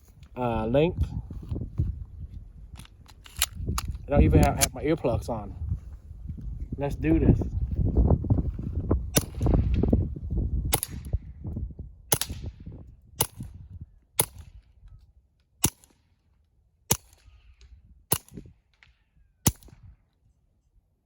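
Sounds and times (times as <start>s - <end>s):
suppressed gunshots: 9.2s - 9.9s, 12.1s - 12.5s.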